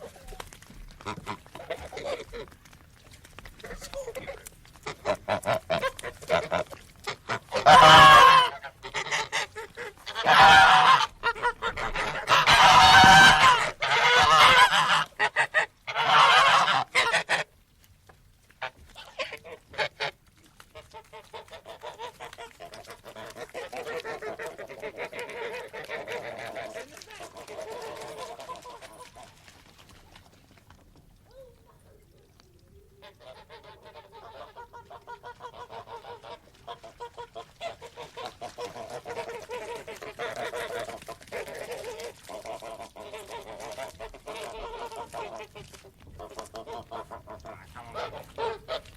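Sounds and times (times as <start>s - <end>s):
geese honking: 4.8s - 17.5s, 33.0s - 48.9s.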